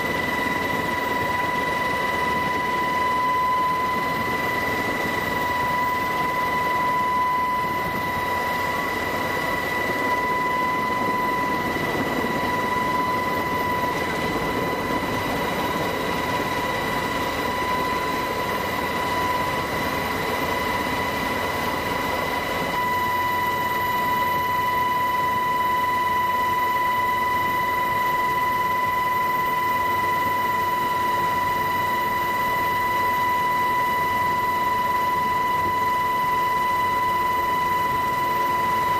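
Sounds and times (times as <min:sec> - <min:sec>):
aircraft cabin whine and hum: 0:00.0 - 0:38.9.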